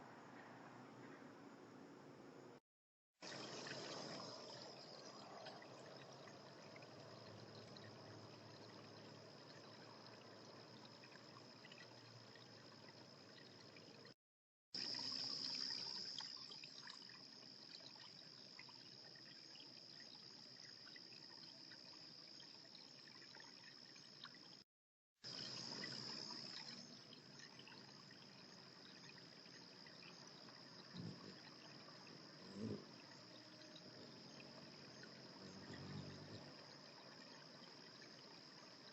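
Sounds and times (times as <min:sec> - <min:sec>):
soft trickling hiss: 0:25.3 - 0:38.9
high-pitched insect drone: 0:32.1 - 0:36.7.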